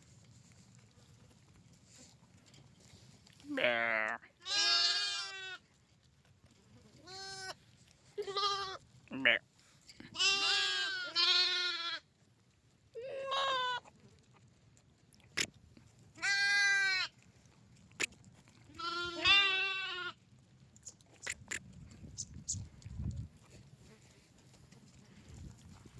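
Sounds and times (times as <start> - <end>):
lamb bleating: 3.5 - 5.6, 7.0 - 7.6, 8.2 - 9.4, 10.1 - 12.1, 13.0 - 13.9, 16.2 - 17.1, 18.8 - 20.2.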